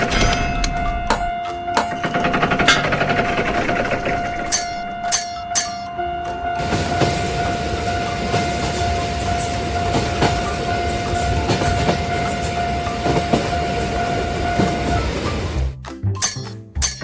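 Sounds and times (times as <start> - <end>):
steady high tone: 4.5 - 6.0
train rumbling on rails: 6.6 - 15.6.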